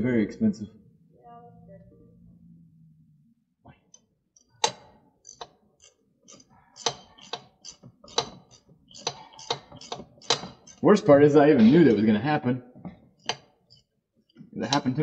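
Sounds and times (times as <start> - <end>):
hand tools clicking and tapping: 3.9 - 10.9, 12.8 - 15.0.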